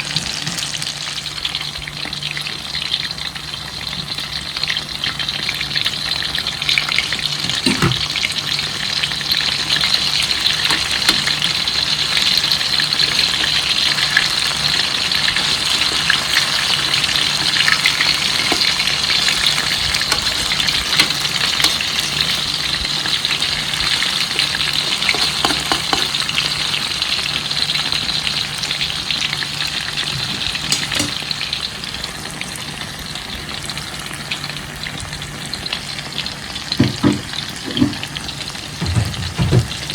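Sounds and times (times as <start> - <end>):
frying in hot oil sizzling: 0.0 - 39.9
utensil knocks: 7.4 - 8.1, 36.8 - 38.1, 38.8 - 39.9.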